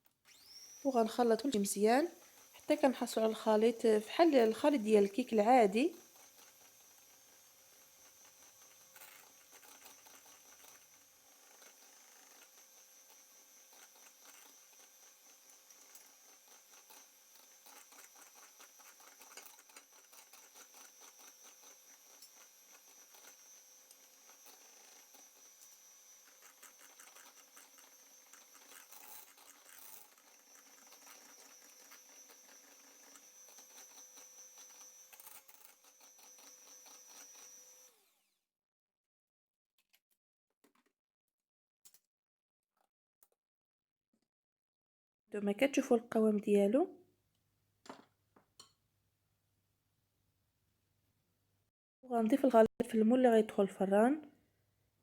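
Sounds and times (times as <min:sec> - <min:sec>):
electric hand mixer whining: 0:00.3 - 0:38.4.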